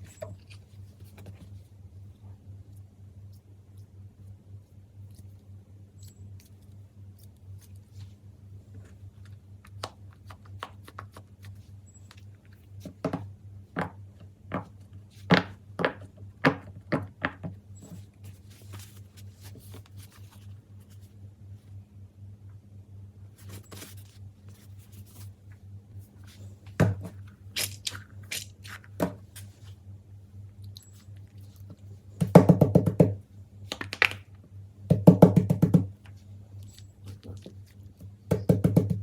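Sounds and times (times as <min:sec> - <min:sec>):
steady low hum: 0:00.0 - 0:39.0
soft rustling: 0:17.8 - 0:21.8, 0:23.3 - 0:29.9.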